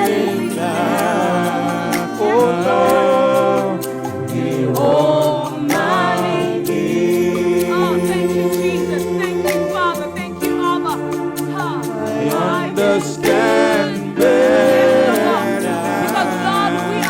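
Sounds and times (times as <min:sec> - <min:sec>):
light percussion ticking: 0:00.0 - 0:17.0
sustained instrumental chords: 0:00.0 - 0:17.0
voices singing worship music: 0:00.0 - 0:17.0.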